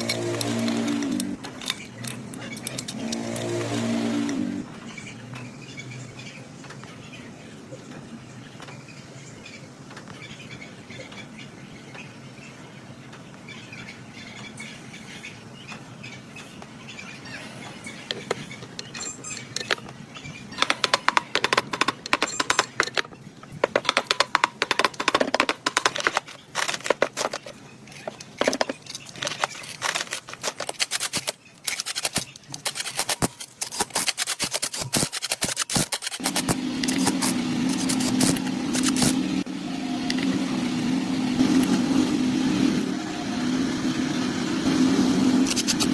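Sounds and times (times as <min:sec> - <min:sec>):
hand tool clicking and scraping metal: 0:00.0 - 0:04.6, 0:20.6 - 0:39.5, 0:45.4 - 0:45.9.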